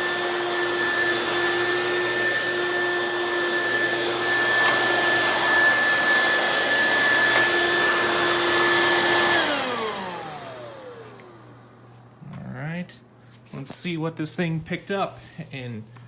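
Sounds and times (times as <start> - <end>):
vacuum motor spinning down: 0.0 - 12.0
stick vacuum whining: 0.0 - 12.2.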